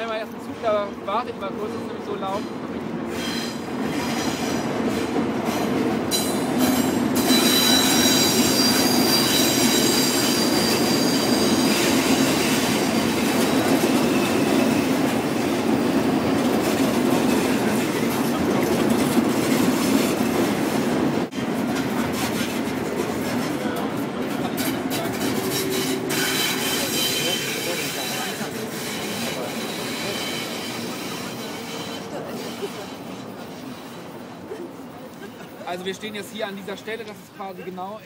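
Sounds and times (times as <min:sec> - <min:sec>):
train wheels squealing: 0:02.2 - 0:16.5, 0:24.4 - 0:34.6
wheels rumbling on track: 0:10.5 - 0:37.3.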